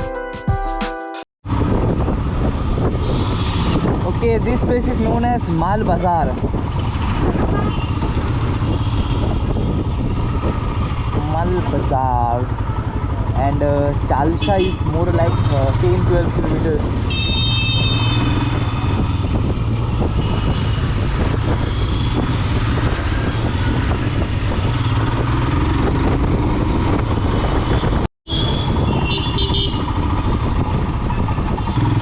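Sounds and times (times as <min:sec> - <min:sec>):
road and wind noise: 0:01.4 - 0:32.0
motorcycle engine running: 0:07.3 - 0:32.0
vehicle horn honking: 0:07.5 - 0:08.0, 0:14.4 - 0:14.9, 0:17.1 - 0:18.5, 0:27.7 - 0:30.0.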